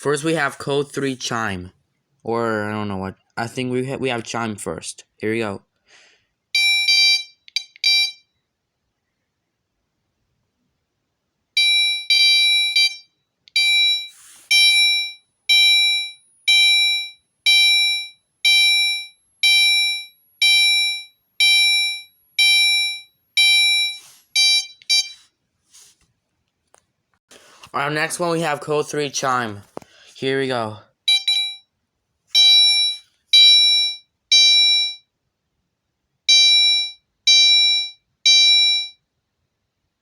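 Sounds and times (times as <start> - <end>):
fire alarm chime notes: 11.6 - 25.2, 31.1 - 31.7, 36.3 - 39.0.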